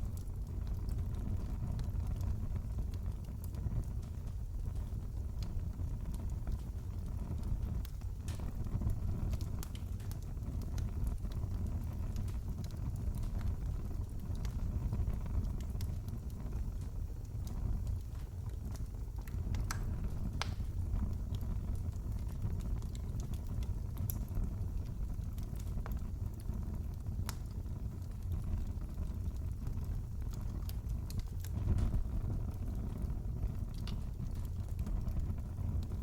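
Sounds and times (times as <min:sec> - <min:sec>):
fire popping and snapping: 0:00.0 - 0:36.0
fire rumbling: 0:00.0 - 0:36.0.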